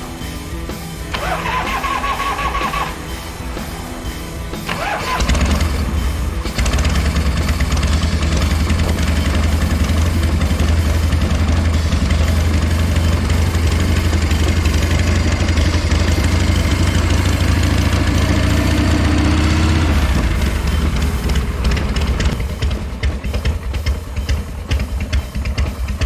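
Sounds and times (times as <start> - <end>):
motorcycle engine idling: 0.0 - 26.0.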